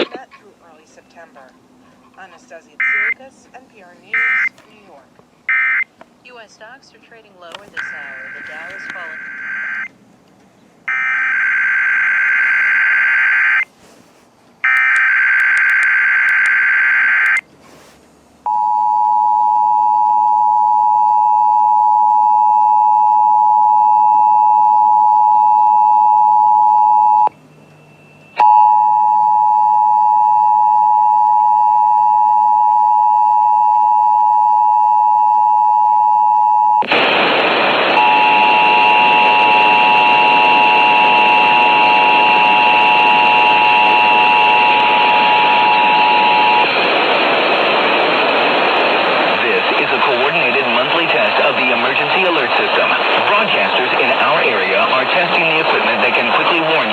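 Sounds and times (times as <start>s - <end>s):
loud static hiss: 0.0s - 18.5s, 36.8s - 56.9s
high steady tone: 38.0s - 46.8s.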